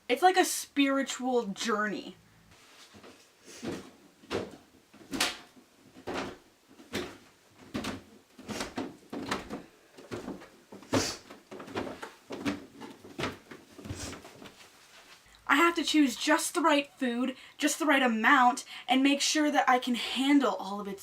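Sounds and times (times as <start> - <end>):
footsteps walking slowly: 2.5 - 15.3.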